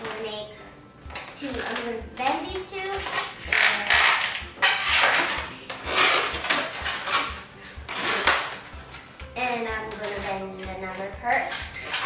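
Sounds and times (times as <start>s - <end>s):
balloons rubbing and squeaking: 2.9s - 8.8s, 11.4s - 12.0s.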